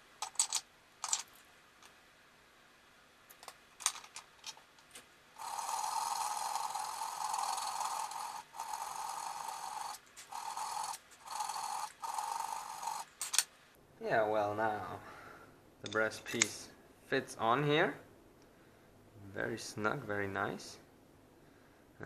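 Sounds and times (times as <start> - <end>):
file rasping on handle fitting: 5.4 - 13.1.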